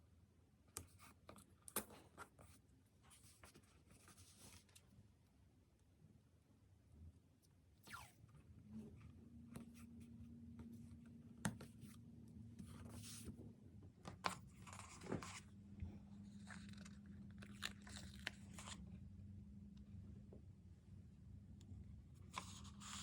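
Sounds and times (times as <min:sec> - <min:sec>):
faint steady hum: 0:00.0 - 0:23.0
stickers peeling and paper rustling: 0:16.2 - 0:18.9.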